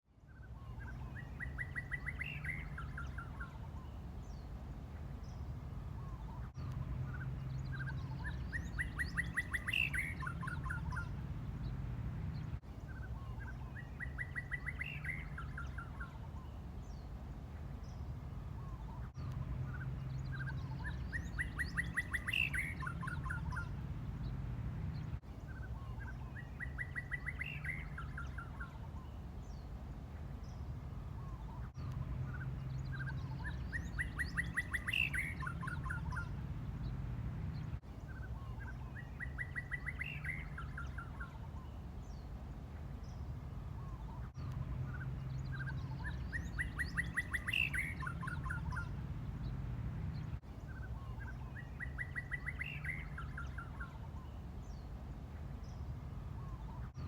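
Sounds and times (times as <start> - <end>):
steady low hum: 0.1 - 57.0
bird call: 0.3 - 4.5, 5.3 - 17.1, 17.9 - 29.7, 30.5 - 42.3, 43.0 - 54.9, 55.5 - 57.0.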